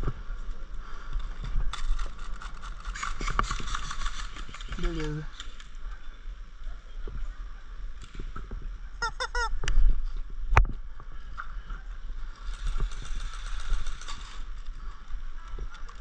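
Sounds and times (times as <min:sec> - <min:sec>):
honking bird calls: 0:09.0 - 0:09.5.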